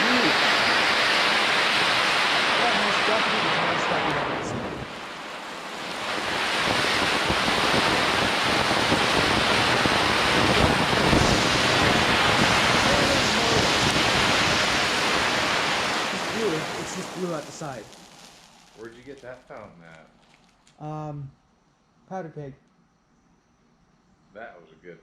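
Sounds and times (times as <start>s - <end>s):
firework fountain hissing: 0.0s - 21.2s.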